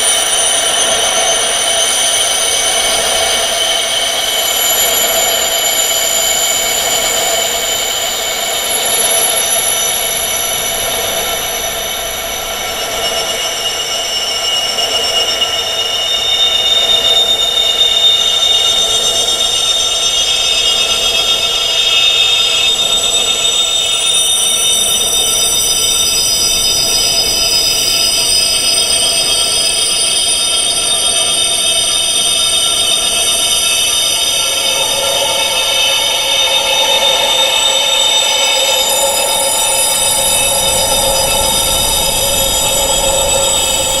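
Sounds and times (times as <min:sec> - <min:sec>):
metal wind chimes ringing: 0:38.3 - 0:44.0.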